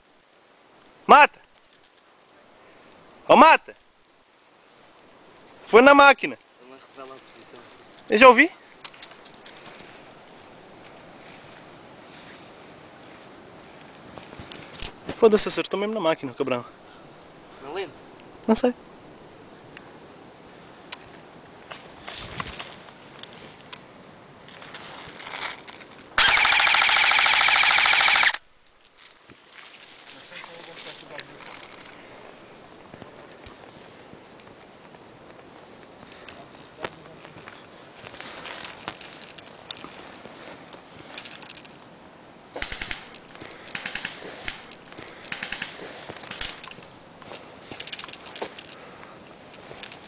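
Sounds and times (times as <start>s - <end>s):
airsoft gun single shots: 26.2s - 28.4s, 42.6s - 43.1s
airsoft rifle full-auto burst: 26.2s - 28.4s, 42.6s - 46.7s.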